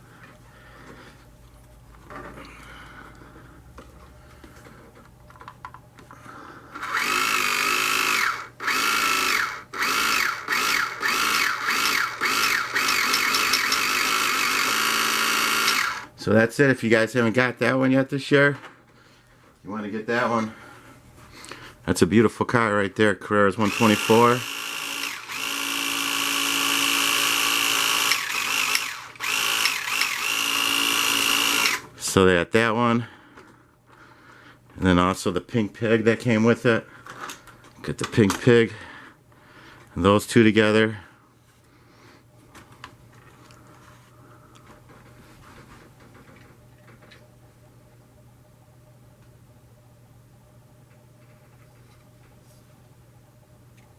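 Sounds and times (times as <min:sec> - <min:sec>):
electric motor whining: 0:06.8 - 0:16.1, 0:23.6 - 0:31.8.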